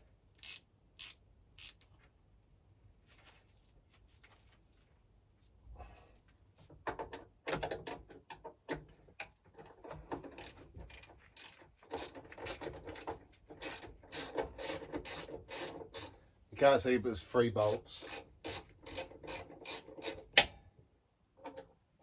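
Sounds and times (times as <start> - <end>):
hand ratchet clicking: 0.3 - 1.9, 10.1 - 16.2, 17.6 - 20.5.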